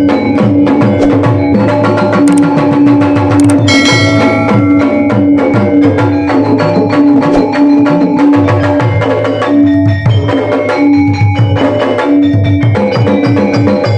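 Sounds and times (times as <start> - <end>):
bright ringing metallic strike: 3.5 - 5.6
gamelan ensemble playing: 3.6 - 6.9
low gong tone: 3.7 - 5.6.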